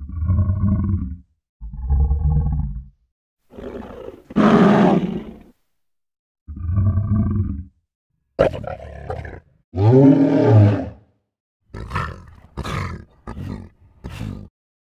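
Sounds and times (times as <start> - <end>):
lion grunting: 3.5 - 5.5, 8.4 - 11.0, 11.7 - 14.5
lion roaring: 3.5 - 5.5, 8.4 - 11.1, 11.7 - 14.5.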